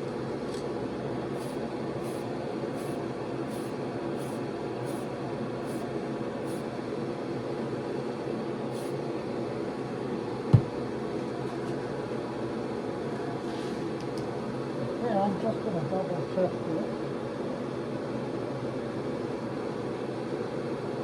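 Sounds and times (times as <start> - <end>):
ventilation fan humming: 0.0 - 21.0
faint short hisses: 8.8 - 9.0
dull thump: 10.5 - 10.8.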